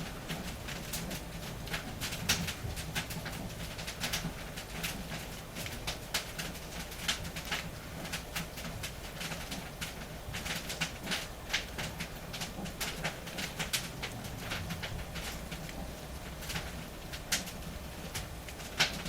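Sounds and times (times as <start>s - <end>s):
wood fire crackling and popping: 0.0s - 19.0s
low steady rumble: 12.3s - 18.7s.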